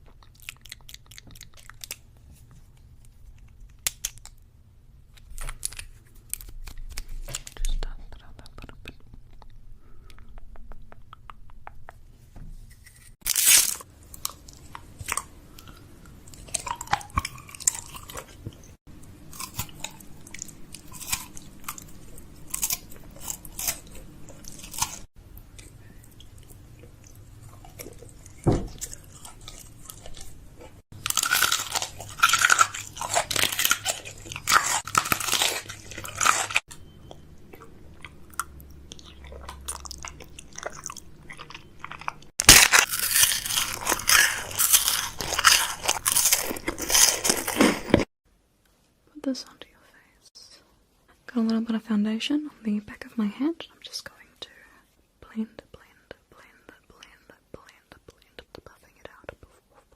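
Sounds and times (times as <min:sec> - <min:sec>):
crunching and crackling: 0:12.8 - 0:48.1.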